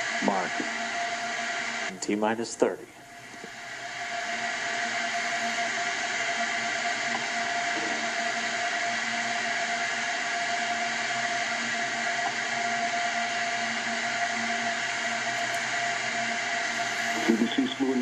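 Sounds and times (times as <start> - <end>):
constant hum tone: 0.0 - 18.0
steady hiss: 16.7 - 18.0.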